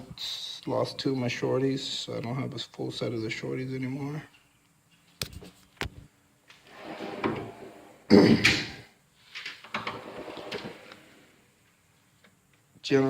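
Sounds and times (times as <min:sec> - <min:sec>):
drawer stopping with loud bang: 0:06.6 - 0:08.8, 0:09.6 - 0:11.4
metal drawers sliding on runners: 0:06.6 - 0:08.8, 0:09.4 - 0:11.5.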